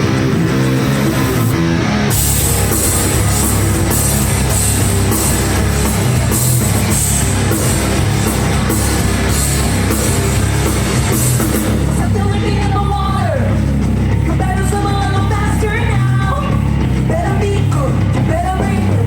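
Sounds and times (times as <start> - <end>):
drum kit with cymbal crashes: 0.0 - 12.2
bass guitar: 0.0 - 19.0
distorted electric guitars: 0.0 - 19.0.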